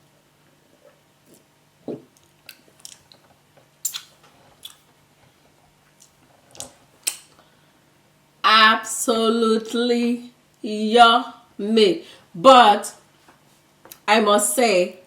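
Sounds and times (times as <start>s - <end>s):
person chewing wet smacks: 1.3s - 4.9s.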